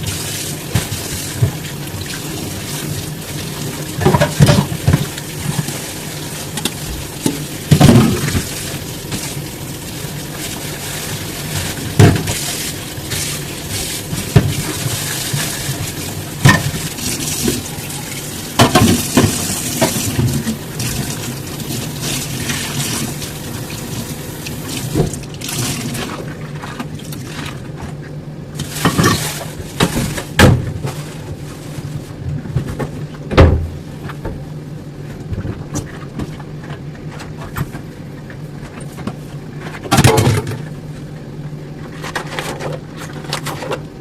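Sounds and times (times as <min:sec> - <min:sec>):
water running into sink: 0:00.0 - 0:27.6.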